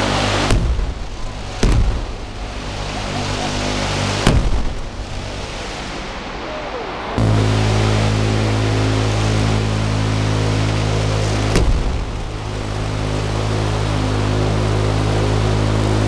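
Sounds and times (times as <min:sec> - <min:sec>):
noisy background: 0:00.0 - 0:16.0
echoing gunshots: 0:00.4 - 0:05.3
minigun rapid-fire buzz: 0:07.2 - 0:16.0.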